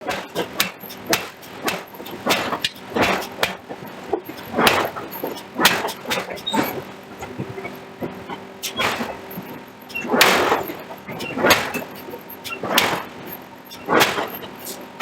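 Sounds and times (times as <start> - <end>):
forging hammer striking: 0.1 - 3.6, 8.7 - 14.6.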